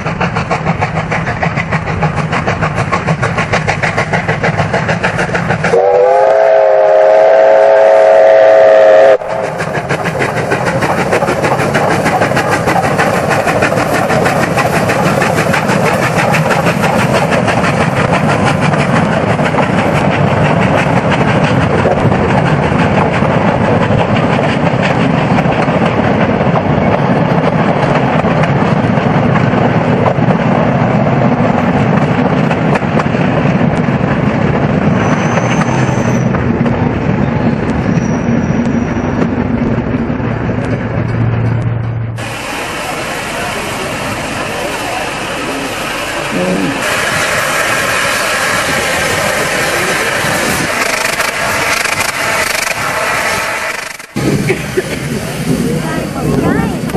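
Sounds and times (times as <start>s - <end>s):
train running with rapid beats: 0.0s - 56.9s
steam locomotive whistle chord: 5.7s - 9.3s.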